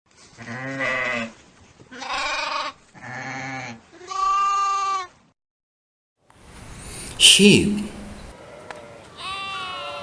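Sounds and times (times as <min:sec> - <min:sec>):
sheep bleating: 0:07.8 - 0:10.0.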